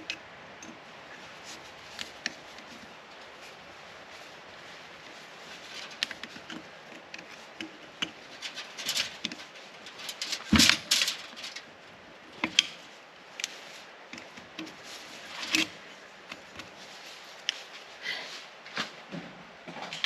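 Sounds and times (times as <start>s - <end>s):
tools and metal parts clinking: 5.1s - 11.7s, 14.2s - 16.8s.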